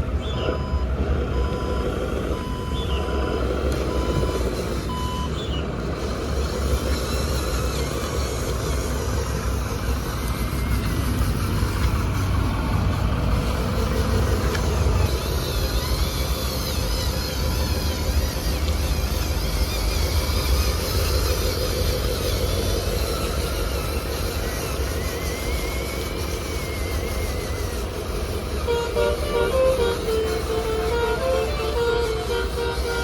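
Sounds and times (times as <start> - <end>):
simulated truck engine sound: 0.0 - 33.0
reversing beeper: 0.2 - 5.7.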